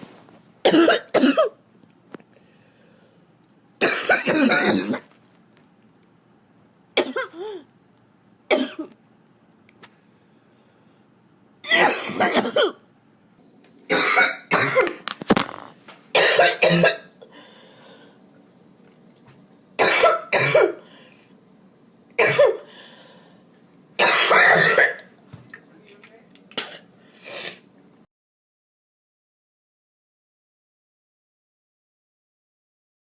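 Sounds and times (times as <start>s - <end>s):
harsh chest coughing: 0.7s - 1.6s, 3.8s - 5.1s, 7.0s - 7.7s, 8.5s - 8.9s, 11.6s - 12.8s, 13.9s - 15.0s, 16.2s - 17.2s, 19.8s - 20.8s, 22.2s - 22.7s, 24.0s - 25.1s.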